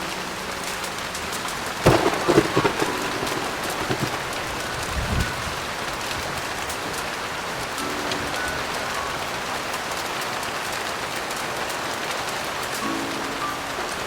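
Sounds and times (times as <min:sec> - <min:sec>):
heavy rain: 0:00.0 - 0:14.0
low thunder rumble: 0:01.8 - 0:06.6
sharp crackling thunderclap: 0:01.8 - 0:07.1.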